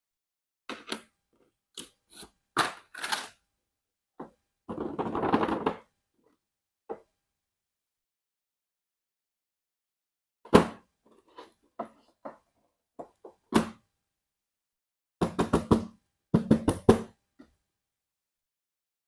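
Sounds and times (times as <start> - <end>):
plastic toys knocking and tapping: 4.2 - 6.0, 15.2 - 17.6.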